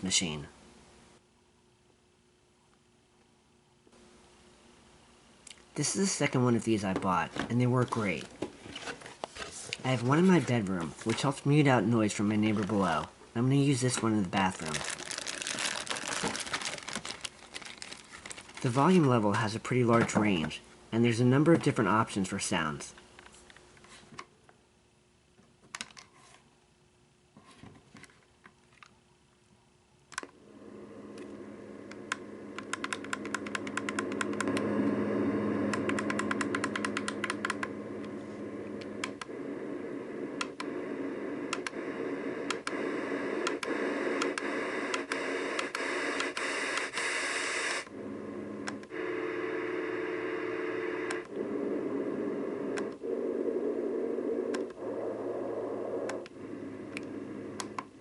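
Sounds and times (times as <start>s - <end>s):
white noise machine hissing: 30.3s - 58.0s.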